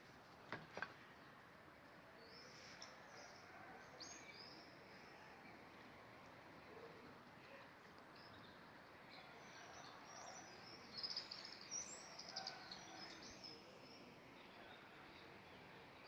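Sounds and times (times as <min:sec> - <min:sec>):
small birds chirping: 0:09.2 - 0:15.7.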